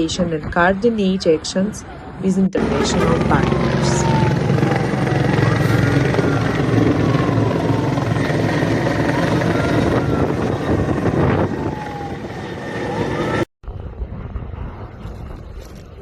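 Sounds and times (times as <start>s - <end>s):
helicopter engine and rotor drone: 2.6s - 13.5s.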